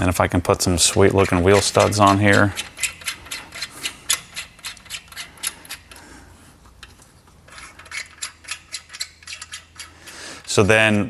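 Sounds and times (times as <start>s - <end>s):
quick metallic clicks: 0.8s - 10.7s.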